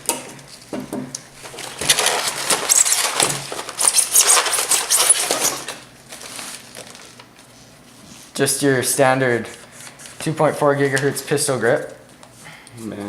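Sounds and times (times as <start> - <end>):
plastic packaging crinkling: 1.3 - 7.5.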